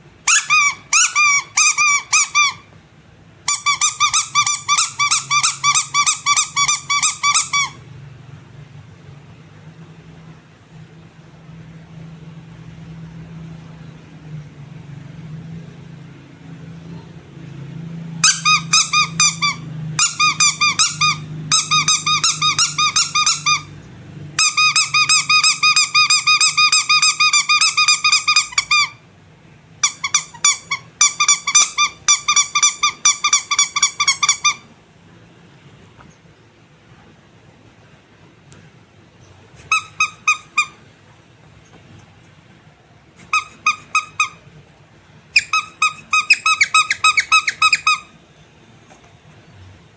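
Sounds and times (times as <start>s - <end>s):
faint low hum: 0.0s - 49.9s
rubber squeaky toy squeaking: 0.2s - 2.7s, 3.5s - 7.8s, 18.2s - 23.8s, 24.4s - 29.0s, 29.8s - 34.7s, 39.6s - 40.8s, 43.2s - 44.4s, 45.3s - 48.2s.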